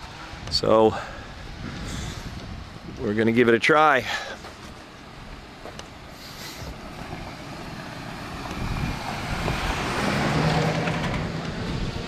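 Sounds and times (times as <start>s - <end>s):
vehicle driving by: 6.7s - 12.0s.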